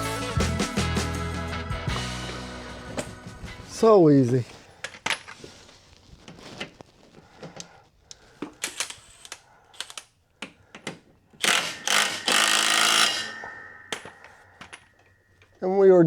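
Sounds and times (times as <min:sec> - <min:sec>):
hand tools clicking on metal: 0:07.5 - 0:15.5
noisy rasping sound: 0:11.4 - 0:15.0.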